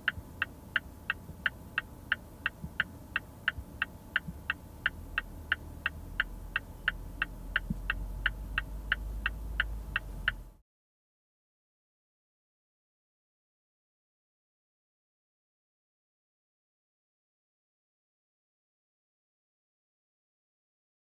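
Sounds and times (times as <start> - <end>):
turn signal ticking: 0.0 - 10.6
low rumble: 4.3 - 10.6.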